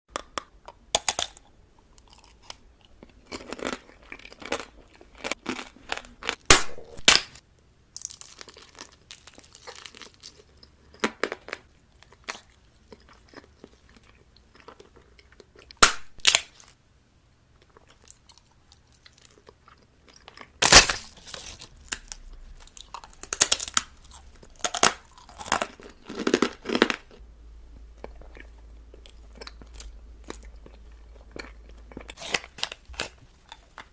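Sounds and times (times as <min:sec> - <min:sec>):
crunchy food being chewed: 0:00.1 - 0:07.1, 0:08.0 - 0:16.8, 0:17.6 - 0:33.9.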